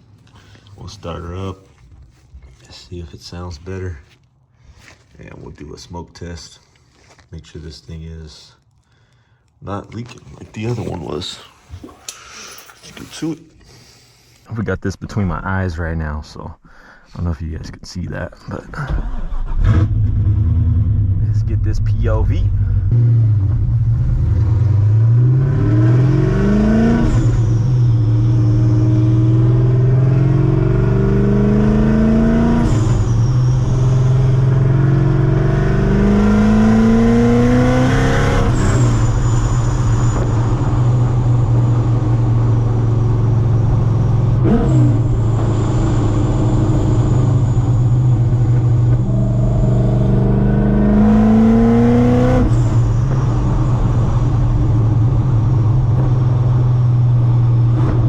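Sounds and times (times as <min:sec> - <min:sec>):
car engine accelerating hard: 0:18.9 - 0:58.0.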